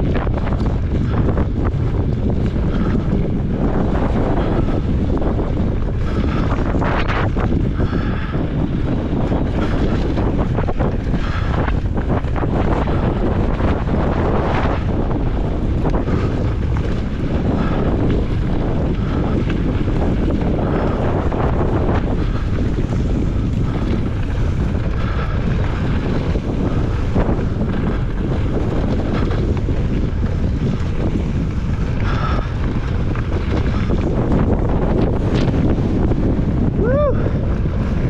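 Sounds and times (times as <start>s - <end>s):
wind buffeting microphone: 0.0s - 38.0s
bike knocking over rough ground: 9.1s - 36.2s.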